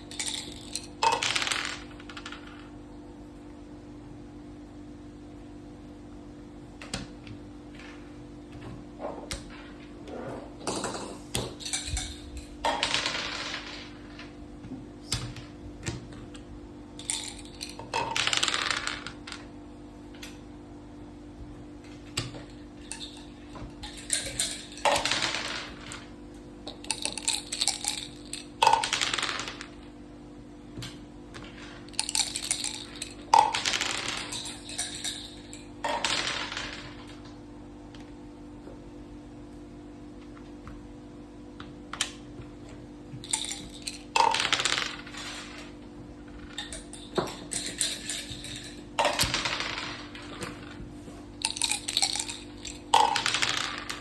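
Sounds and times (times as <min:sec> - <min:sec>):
game pieces clicking on board: 0:00.0 - 0:02.7, 0:17.0 - 0:19.5, 0:22.1 - 0:26.1, 0:26.7 - 0:29.8, 0:30.9 - 0:37.2, 0:43.2 - 0:50.8, 0:51.4 - 0:54.0
dice rattling: 0:17.0 - 0:19.4, 0:22.9 - 0:26.1, 0:26.7 - 0:29.8, 0:31.4 - 0:37.1, 0:43.2 - 0:45.7, 0:46.4 - 0:50.8, 0:51.4 - 0:54.0.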